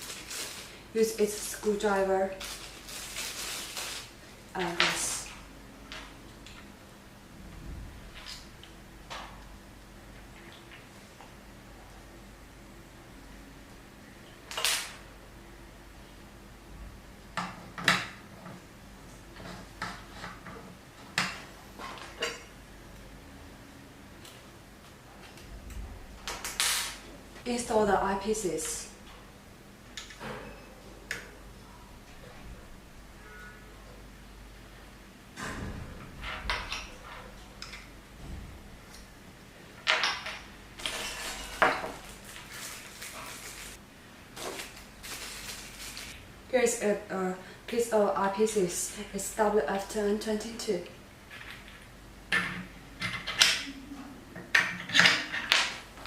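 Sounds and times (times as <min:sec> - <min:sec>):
rustling: 0:02.3 - 0:04.4, 0:40.8 - 0:43.8, 0:44.4 - 0:46.2.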